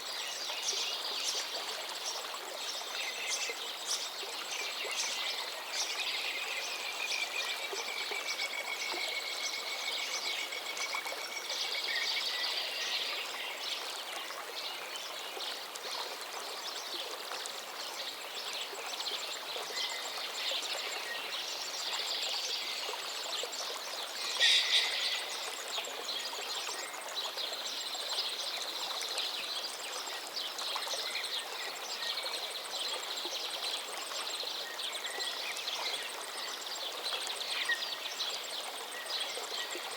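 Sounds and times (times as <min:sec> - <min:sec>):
songbirds singing and calling: 0:00.1 - 0:39.9
flowing river rushing: 0:17.6 - 0:31.5.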